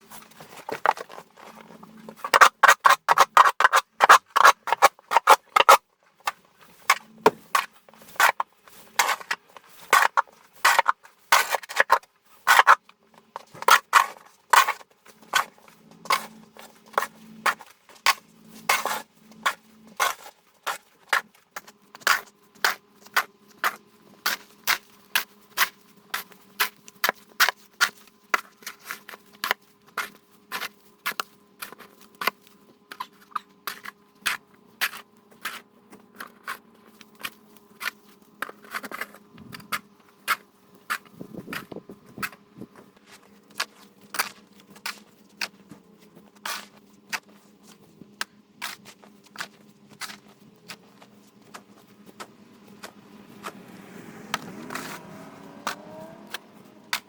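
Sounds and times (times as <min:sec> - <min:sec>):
ice scraping off car: 0:48.7 - 0:57.0.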